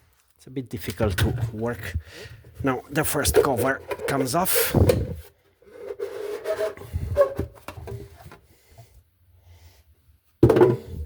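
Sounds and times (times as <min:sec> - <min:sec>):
cover scraping and rubbing: 0:02.9 - 0:08.4.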